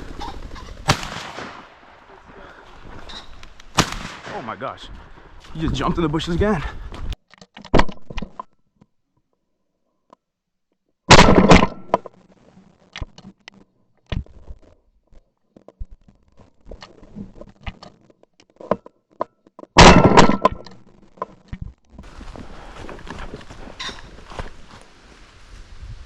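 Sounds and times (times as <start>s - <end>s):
shotgun blasts: 0.8s - 2.4s, 3.7s - 5.0s
footsteps in brush: 2.0s - 7.2s, 21.9s - 26.0s.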